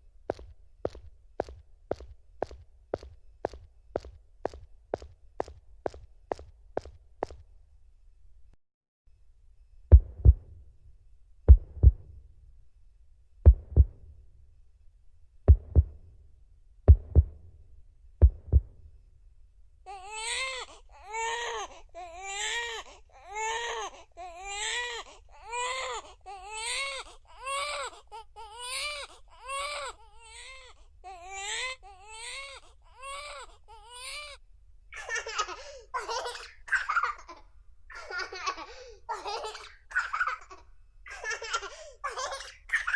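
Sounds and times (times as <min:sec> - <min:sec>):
synthesized heartbeat thumps: 0:09.9 - 0:10.6, 0:11.5 - 0:12.2, 0:13.4 - 0:14.2, 0:15.5 - 0:16.1, 0:16.9 - 0:17.5, 0:18.2 - 0:18.9
baby crying: 0:19.9 - 0:34.4, 0:35.0 - 0:42.9.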